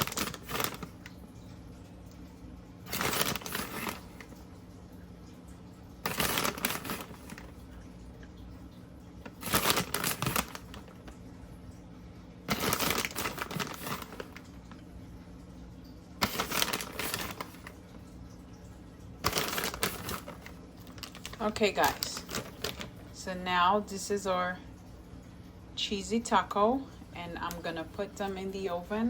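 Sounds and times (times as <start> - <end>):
cheese rustling and clicking: 0.0 - 1.2, 2.9 - 4.4, 6.0 - 7.6, 9.2 - 11.2, 12.5 - 14.8, 16.2 - 17.9, 19.2 - 23.0
faint steady hum: 0.0 - 29.0.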